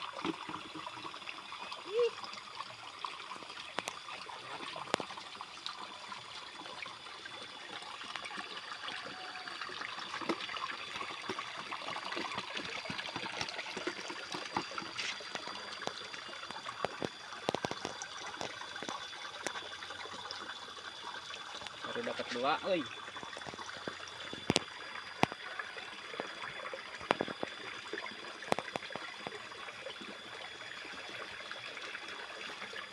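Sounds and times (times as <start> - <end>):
trickle of running water: 0.0 - 32.9
small clicks and knocks: 14.5 - 19.6.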